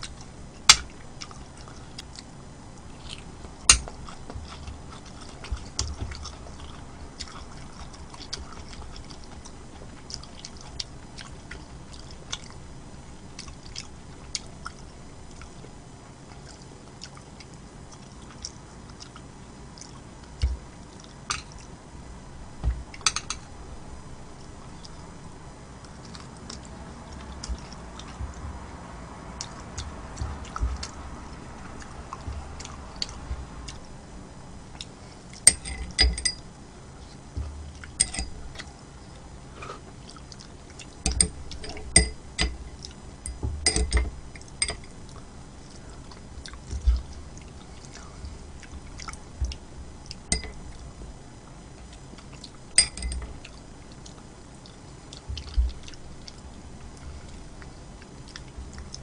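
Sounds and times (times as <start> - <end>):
soft chewing: 0.0 - 59.0.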